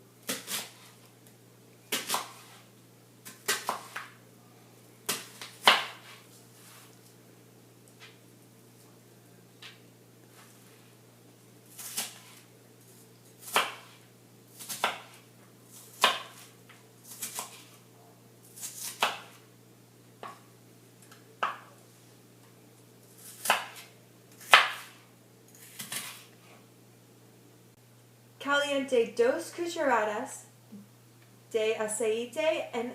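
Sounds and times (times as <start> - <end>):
knife chopping onion on board: 1.9 - 2.6, 3.2 - 4.1, 5.1 - 6.2, 13.4 - 14.0, 14.6 - 15.2, 15.9 - 16.4, 18.6 - 19.4, 23.3 - 25.0.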